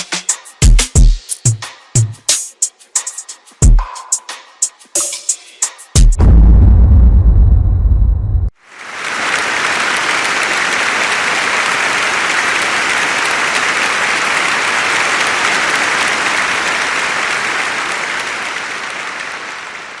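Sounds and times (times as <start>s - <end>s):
audience applauding: 8.6s - 20.0s.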